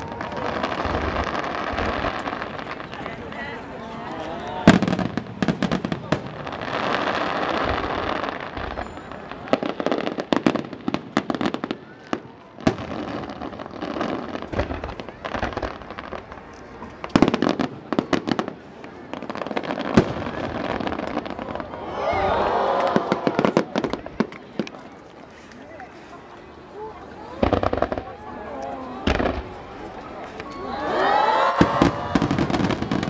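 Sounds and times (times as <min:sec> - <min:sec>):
fireworks cracking and popping: 0:00.0 - 0:21.8, 0:22.6 - 0:25.3, 0:27.1 - 0:30.6, 0:31.5 - 0:33.0.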